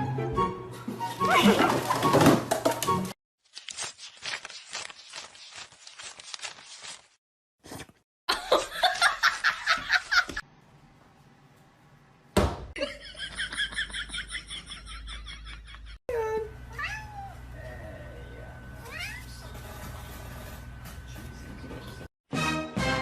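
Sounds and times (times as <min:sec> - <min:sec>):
people laughing: 0:08.3 - 0:10.4, 0:12.8 - 0:16.0.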